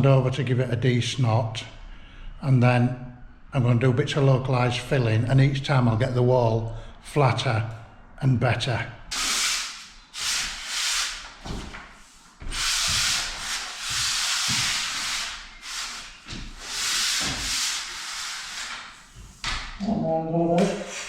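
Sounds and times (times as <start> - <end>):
pole sander rubbing plaster wall: 9.1 - 19.8, 20.4 - 21.0.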